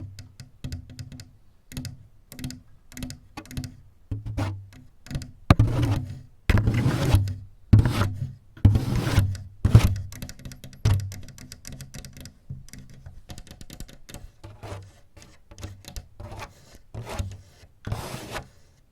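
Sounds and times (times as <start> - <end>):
rough scratching and rubbing: 5.5 - 9.9, 14.1 - 18.8.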